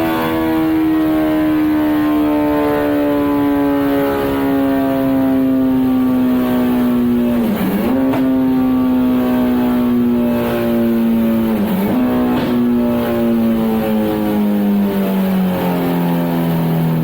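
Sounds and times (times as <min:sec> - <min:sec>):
motorcycle engine running hard: 0:05.1 - 0:17.0.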